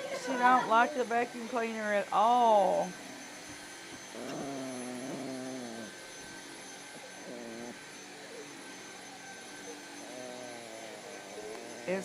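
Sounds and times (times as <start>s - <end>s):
vacuum cleaner whine and hiss: 0.0s - 12.0s
small dog growling: 4.0s - 6.1s, 6.9s - 7.9s, 10.0s - 12.0s.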